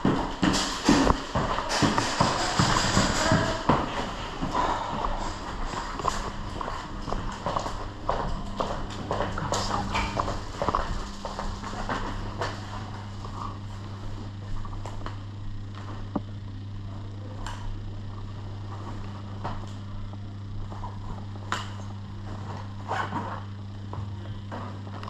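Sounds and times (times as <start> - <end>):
footsteps: 0.0 - 16.3
steady low hum: 0.0 - 25.0.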